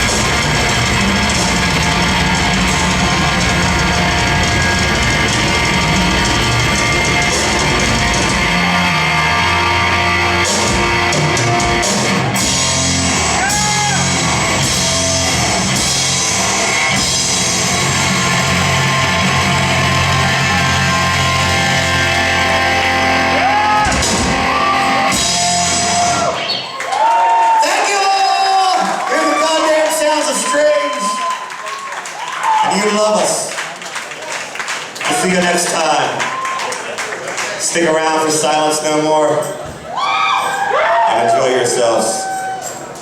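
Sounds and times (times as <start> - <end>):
live rock band playing: 0.0 - 26.6.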